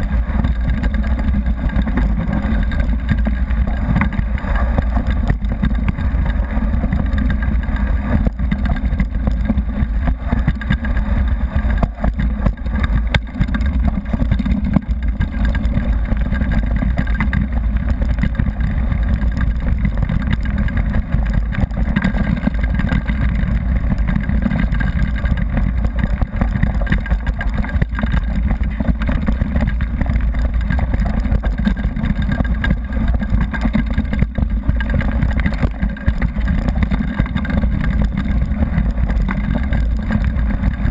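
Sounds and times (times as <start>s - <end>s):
rattles and knocks on gravel: 0.0s - 40.9s.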